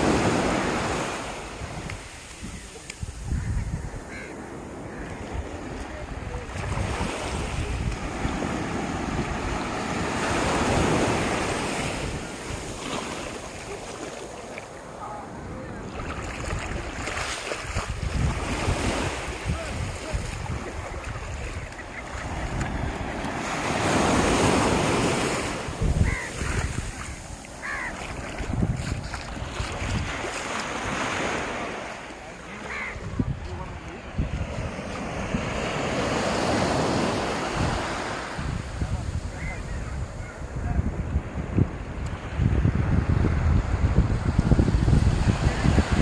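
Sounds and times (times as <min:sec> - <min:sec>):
wind buffeting microphone: 0:00.0 - 0:13.3, 0:15.4 - 0:31.0, 0:33.0 - 0:46.0
sea waves breaking on beach: 0:00.0 - 0:46.0.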